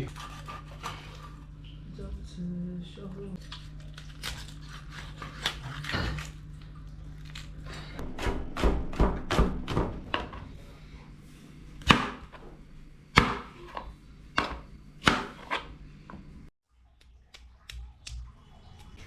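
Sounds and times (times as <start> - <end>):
knife chopping food: 11.8 - 12.5, 13.1 - 16.3.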